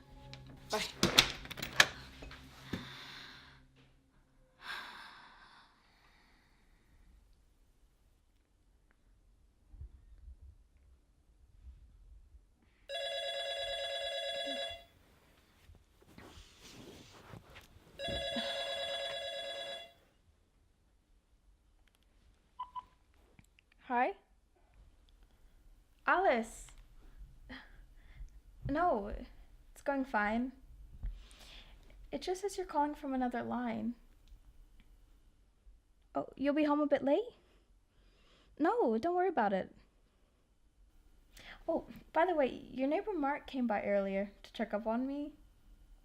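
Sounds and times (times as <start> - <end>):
electronic telephone ring: 12.9 - 14.9, 18.0 - 20.0.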